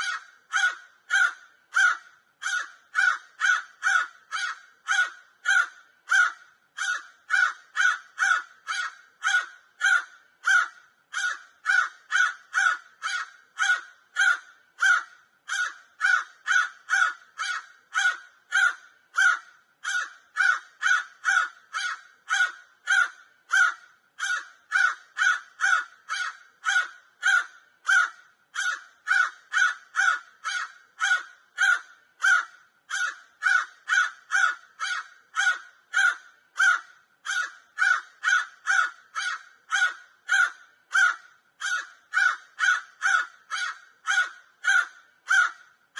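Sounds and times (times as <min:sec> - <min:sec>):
crow cawing: 0:00.0 - 0:45.8.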